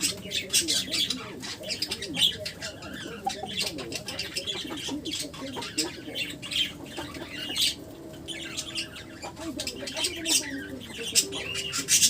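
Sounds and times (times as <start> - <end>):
birds squawking and chirping: 0.0 - 12.0.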